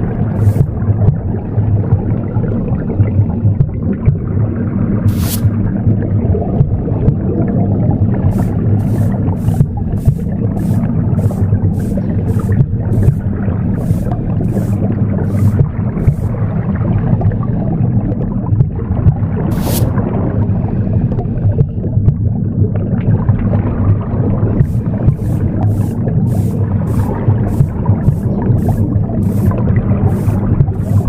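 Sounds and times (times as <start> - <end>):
womb sound whooshing rumble: 0.0 - 2.1, 8.2 - 16.5, 24.6 - 31.0
broom sweeping: 0.2 - 0.7, 5.1 - 5.6, 8.3 - 16.4, 19.5 - 20.0, 24.6 - 31.0.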